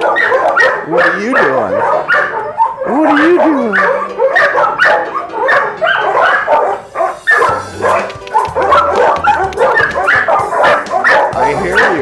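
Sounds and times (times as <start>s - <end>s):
dogs barking: 0.0s - 12.0s.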